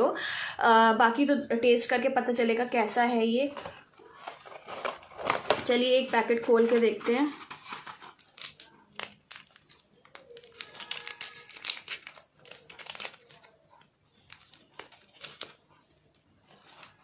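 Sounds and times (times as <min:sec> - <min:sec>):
sachet crinkling torn open: 0:08.0 - 0:17.0.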